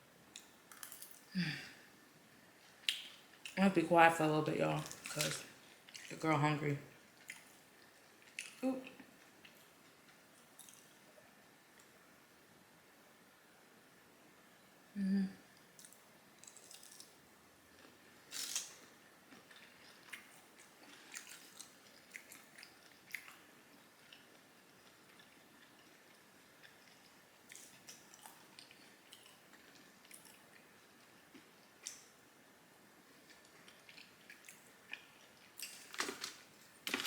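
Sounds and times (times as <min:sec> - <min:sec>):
chewing and lip-smacking: 0:07.2 - 0:08.6, 0:10.4 - 0:11.0, 0:15.8 - 0:17.1, 0:17.8 - 0:32.1, 0:33.2 - 0:36.4.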